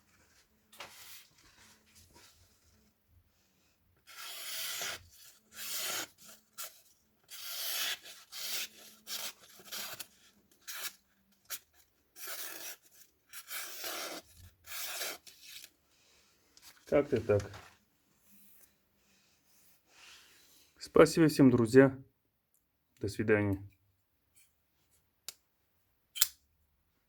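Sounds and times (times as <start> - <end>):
knife blade slicing paper: 4.1 - 11.6.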